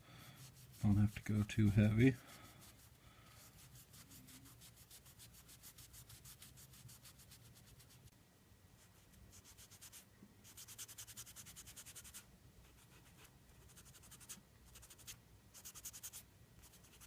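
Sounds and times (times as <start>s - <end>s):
cloth rubbing on metal: 0.0s - 8.1s.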